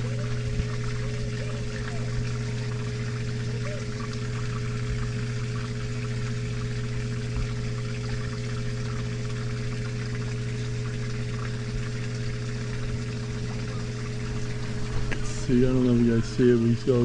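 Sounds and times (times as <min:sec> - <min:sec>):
water pump humming: 0:00.0 - 0:17.0
water splashing and trickling: 0:00.0 - 0:17.0.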